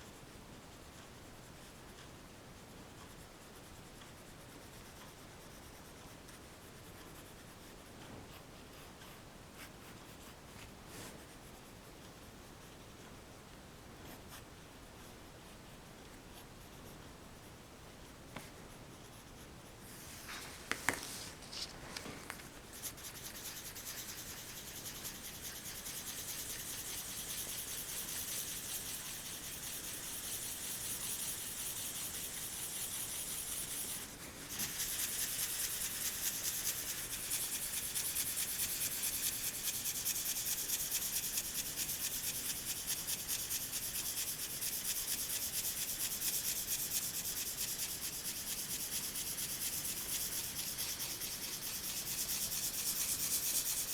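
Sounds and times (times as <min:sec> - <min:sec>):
pencil scratching on paper: 0:00.8 - 0:13.0, 0:18.3 - 0:53.9
light pencil taps: 0:20.6 - 0:22.5.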